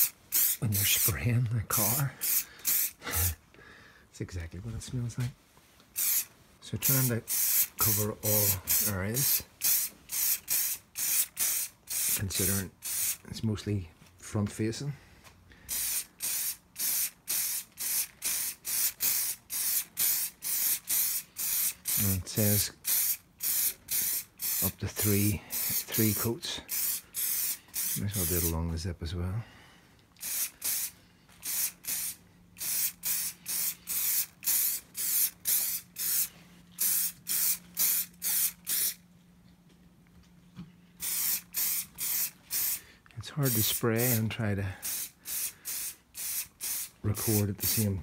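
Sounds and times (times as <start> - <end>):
aerosol can spraying in bursts: 0.0 - 1.2, 1.8 - 3.4, 6.0 - 13.2, 15.7 - 28.5, 30.2 - 39.0, 41.0 - 42.8, 43.4 - 44.2, 44.8 - 47.9.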